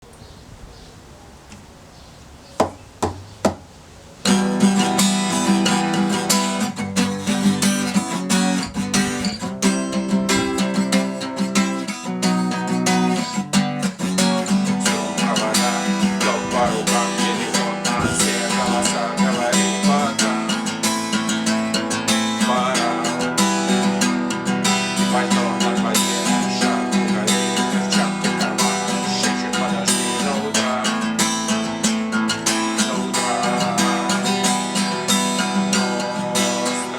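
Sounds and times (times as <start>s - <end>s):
short sharp knocks: 2.6s - 3.7s
acoustic guitar strumming: 2.6s - 36.9s.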